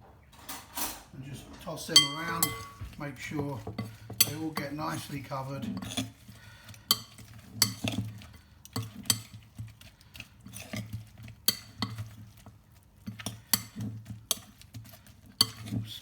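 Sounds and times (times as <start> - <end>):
spoon clinking against bowl: 1.9 - 3.0, 3.6 - 4.8.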